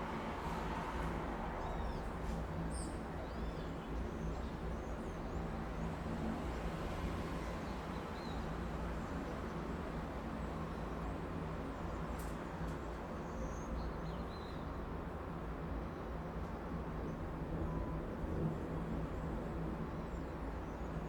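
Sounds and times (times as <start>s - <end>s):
low rumble of traffic: 0.0s - 13.8s.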